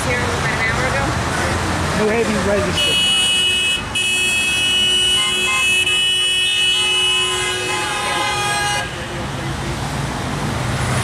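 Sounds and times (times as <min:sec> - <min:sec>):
vehicle horns honking: 0:02.7 - 0:09.3.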